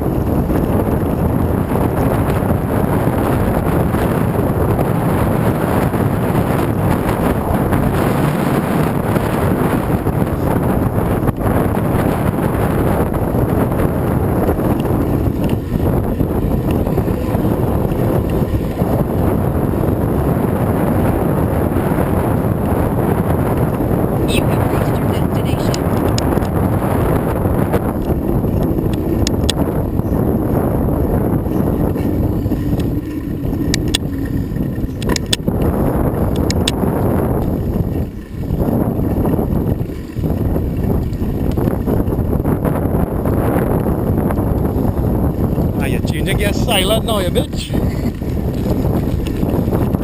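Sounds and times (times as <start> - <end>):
wind buffeting microphone: 0.0 - 50.0
sharp clicks: 35.0 - 35.5, 36.4 - 36.8.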